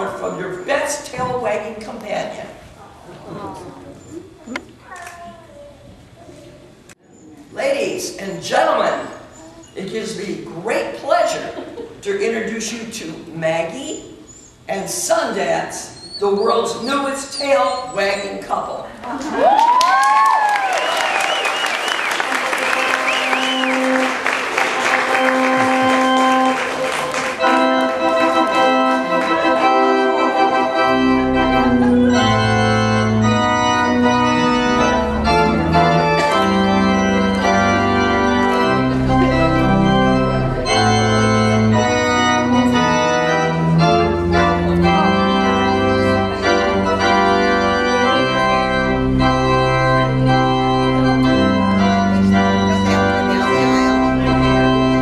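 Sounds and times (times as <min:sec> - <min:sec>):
organ playing sustained chords: 0:00.0 - 0:02.4, 0:20.7 - 0:55.0
applause: 0:19.4 - 0:28.0
deep bass organ notes: 0:20.9 - 0:55.0.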